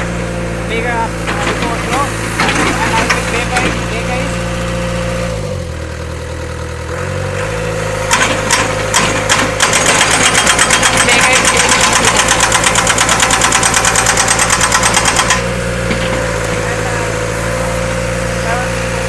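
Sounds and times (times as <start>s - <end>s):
diesel engine running: 0.0s - 19.0s
hydraulic breaker hammering: 0.7s - 5.5s, 7.4s - 19.0s.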